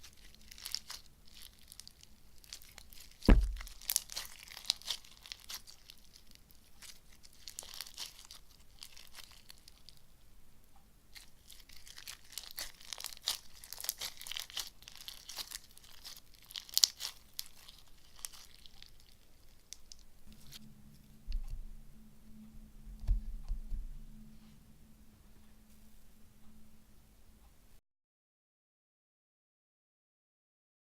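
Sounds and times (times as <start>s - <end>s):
crunchy slime crackling and popping: 0.0s - 10.0s, 11.1s - 20.6s.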